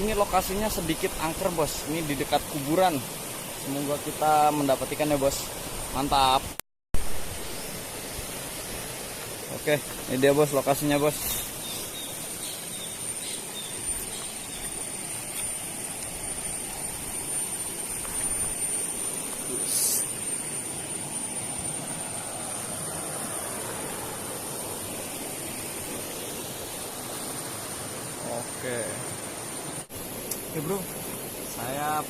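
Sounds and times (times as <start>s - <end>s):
high steady whine: 0.0s - 32.0s
river water rushing: 7.1s - 31.9s.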